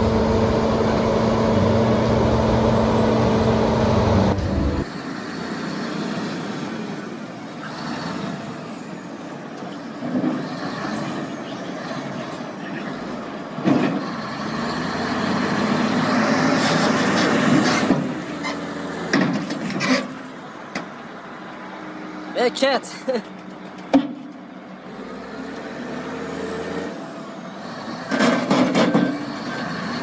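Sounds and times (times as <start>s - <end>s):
diesel engine running: 0.0s - 5.5s.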